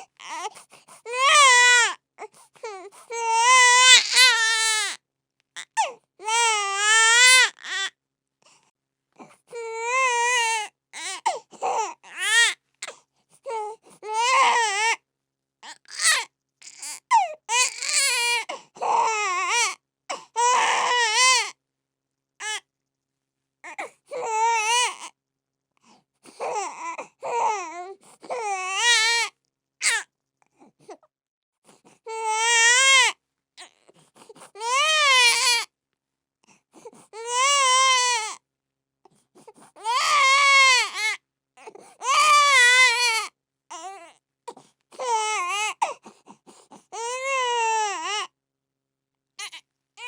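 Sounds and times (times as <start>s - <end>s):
baby crying: 0.2s - 2.0s, 2.6s - 5.0s, 5.6s - 7.9s, 9.5s - 12.6s, 13.5s - 15.0s, 15.6s - 21.5s, 22.4s - 22.6s, 23.6s - 25.1s, 26.4s - 30.0s, 32.1s - 33.8s, 34.6s - 35.7s, 37.2s - 38.4s, 39.8s - 44.2s, 45.0s - 45.9s, 46.9s - 48.3s, 49.4s - 49.6s.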